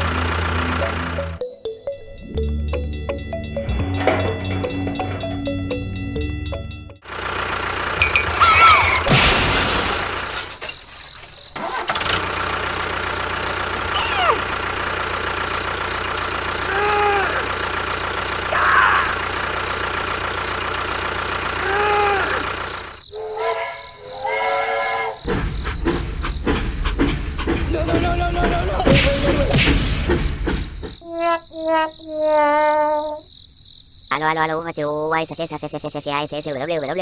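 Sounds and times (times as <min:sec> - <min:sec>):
motor running steadily: 0:12.2 - 0:23.0.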